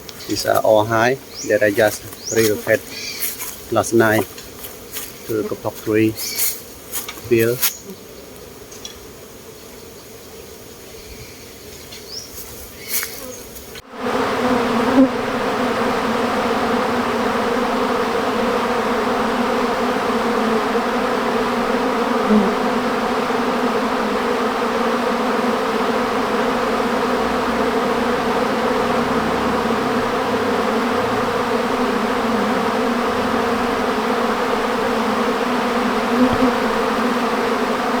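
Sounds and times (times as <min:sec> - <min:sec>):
honeybees buzzing: 0:00.0 - 0:38.0.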